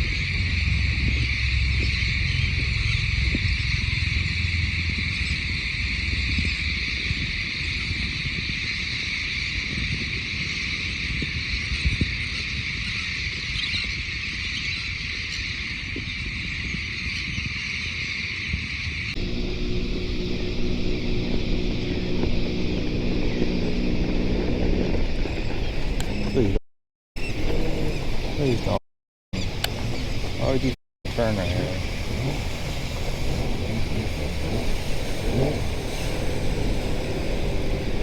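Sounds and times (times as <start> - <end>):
wind rumble on microphone: 0.0 - 26.6, 27.2 - 28.8, 29.4 - 38.0
seabirds calling: 19.2 - 26.6, 27.2 - 28.8, 29.4 - 38.0.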